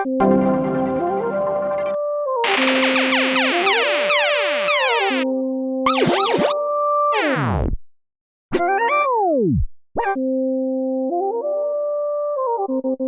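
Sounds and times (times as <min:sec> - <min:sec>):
dubstep synthesizer music: 0:02.4 - 0:05.2, 0:05.9 - 0:06.6, 0:07.2 - 0:07.6.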